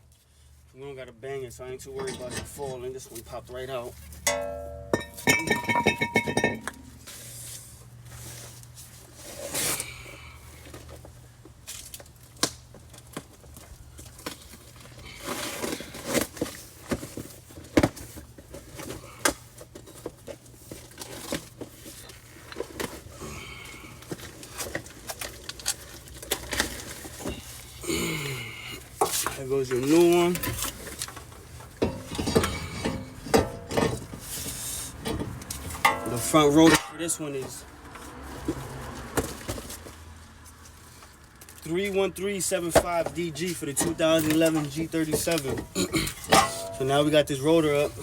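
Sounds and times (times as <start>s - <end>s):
metal tools clinking and knocking: 2.0s - 2.8s, 4.1s - 7.0s, 31.8s - 34.1s, 35.0s - 37.2s, 43.8s - 47.1s
short metallic ring: 4.2s - 7.0s, 35.8s - 37.1s, 46.3s - 46.9s.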